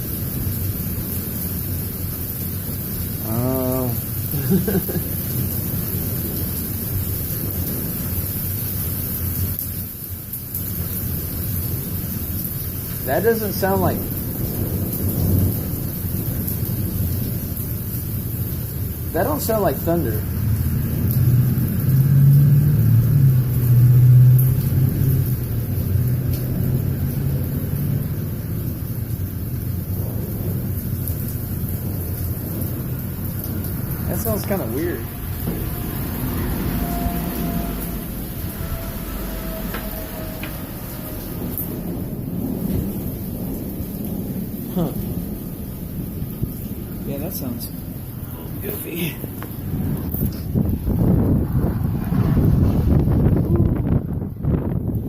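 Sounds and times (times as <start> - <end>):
storm wind on microphone: 0.0 - 55.0
low steady rumble: 20.1 - 55.0.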